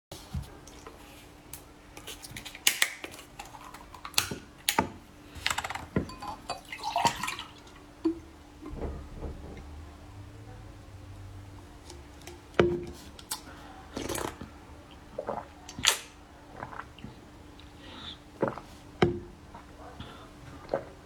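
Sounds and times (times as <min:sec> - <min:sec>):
person sipping and gulping: 0:15.1 - 0:18.9.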